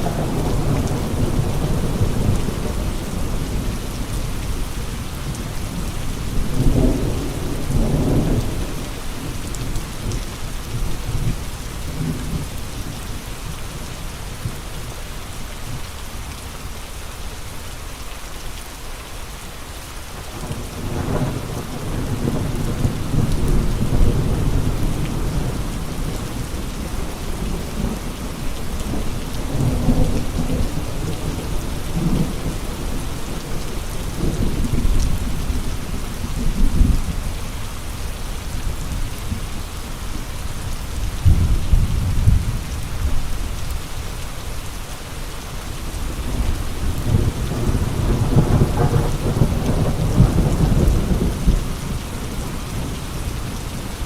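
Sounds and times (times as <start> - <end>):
heavy rain hissing: 0.0 - 54.0.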